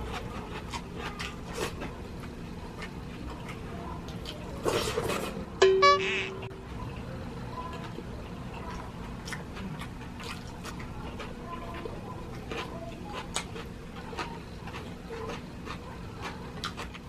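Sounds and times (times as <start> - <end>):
chewing with clicks and smacks: 0.0 - 5.4, 6.8 - 17.0
steady low hum: 5.3 - 12.8.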